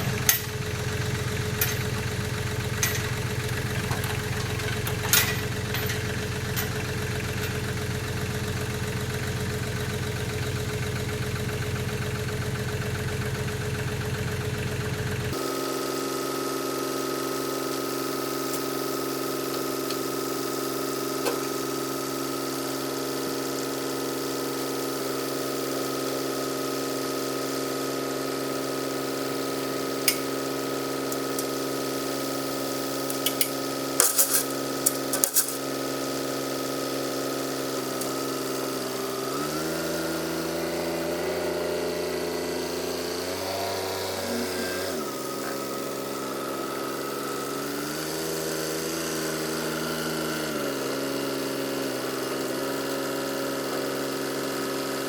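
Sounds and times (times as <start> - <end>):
engine running under load: 0.0 - 55.0
sharp metallic clinks: 1.4 - 7.6.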